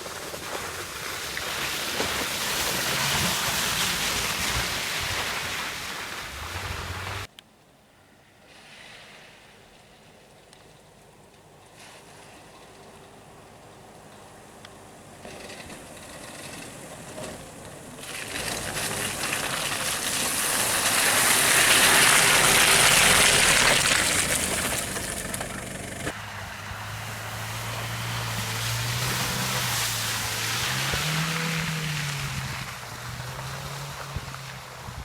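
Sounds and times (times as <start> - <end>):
vehicle splashing through water: 0.0 - 7.3, 11.5 - 35.0
engine revving: 15.2 - 35.0.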